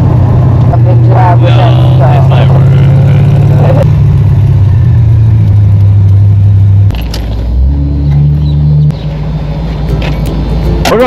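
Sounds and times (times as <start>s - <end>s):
car engine running loudly: 0.0s - 11.0s.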